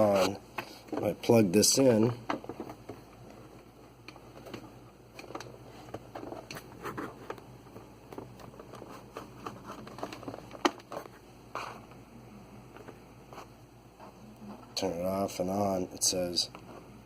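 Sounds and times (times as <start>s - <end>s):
plastic device clicks and rustles: 4.0s - 11.1s.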